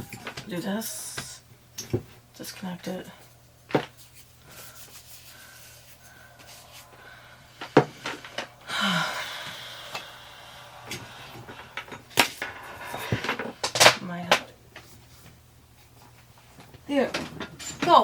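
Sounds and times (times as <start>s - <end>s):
rustling rub: 3.2s - 7.2s.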